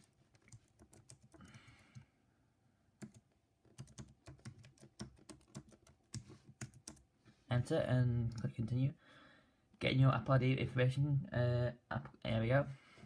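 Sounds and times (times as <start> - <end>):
keyboard typing: 0.0 - 2.0, 3.0 - 7.1.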